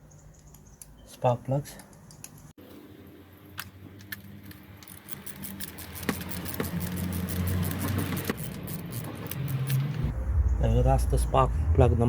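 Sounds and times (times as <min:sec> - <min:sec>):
ratchet clicking: 0:04.5 - 0:10.0
low rumble: 0:09.9 - 0:12.0.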